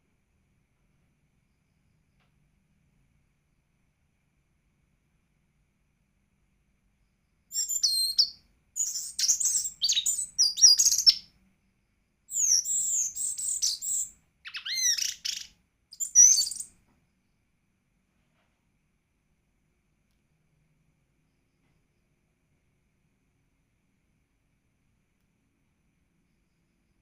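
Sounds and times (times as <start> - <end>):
songbird twittering: 7.5 - 11.3, 12.3 - 16.7.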